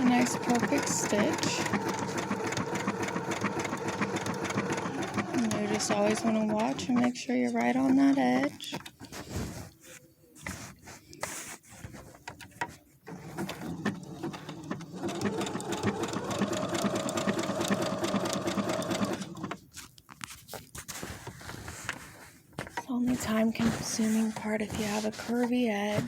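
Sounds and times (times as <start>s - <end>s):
sewing machine stitching: 0.0s - 8.8s, 13.0s - 19.6s
sewing machine clicks: 0.0s - 8.9s, 13.1s - 19.6s.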